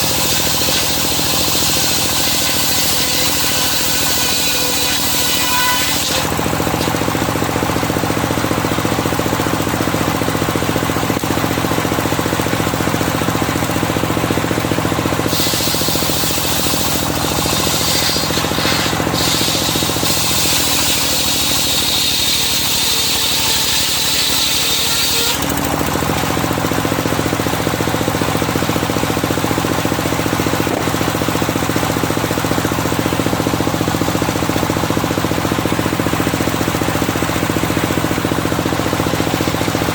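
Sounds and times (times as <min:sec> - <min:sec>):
saw blade whining through log: 0:00.0 - 0:39.9
sawmill engine running: 0:00.0 - 0:39.9.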